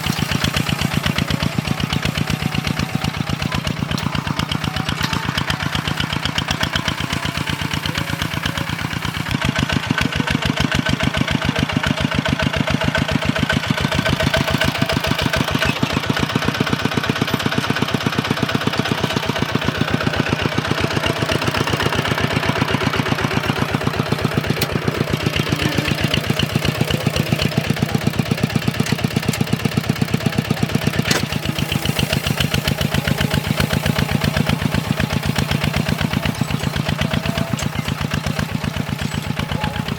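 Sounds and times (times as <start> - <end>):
diesel engine chugging: 0.0 - 39.9.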